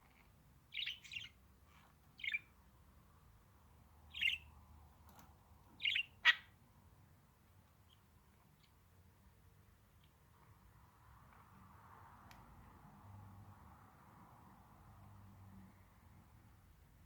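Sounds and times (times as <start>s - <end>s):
budgerigar chirping: 0.7s - 1.4s, 2.2s - 2.5s, 4.1s - 4.5s, 5.8s - 6.5s.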